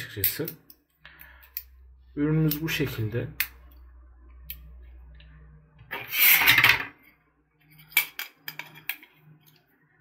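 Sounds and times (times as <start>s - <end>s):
metal tool rubbing scrape: 5.9s - 6.8s.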